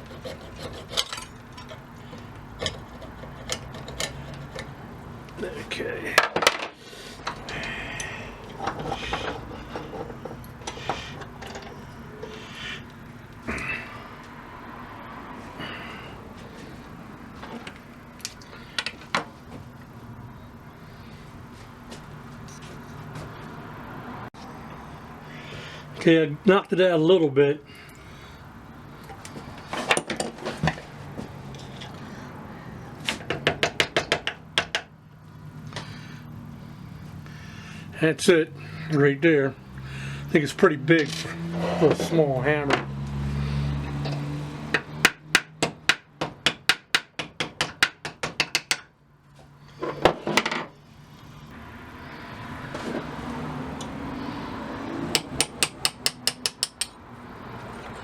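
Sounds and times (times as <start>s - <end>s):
tool scraping wood: 0.0s - 4.8s, 8.5s - 12.9s, 41.1s - 42.2s
hammer knocking on metal wedge: 44.7s - 48.9s.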